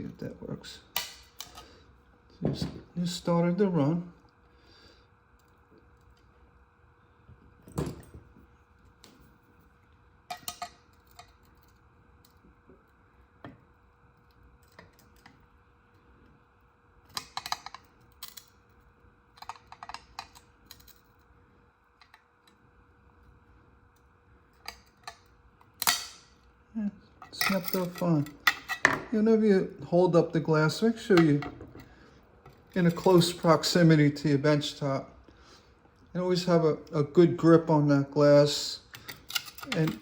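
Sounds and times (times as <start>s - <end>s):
glass and tools clinking: 27.2s - 28.8s, 39.0s - 40.0s.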